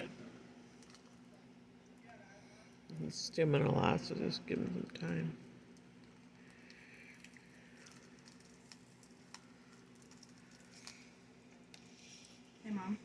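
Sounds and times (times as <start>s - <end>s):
low steady hum: 0.0s - 13.0s
plastic shrink-wrap crinkling: 6.0s - 13.0s.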